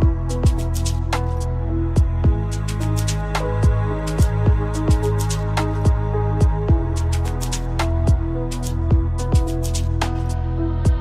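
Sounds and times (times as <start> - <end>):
kick drum beat: 2.0 - 2.5, 3.6 - 5.1, 5.9 - 7.0, 8.1 - 8.3, 8.9 - 9.6.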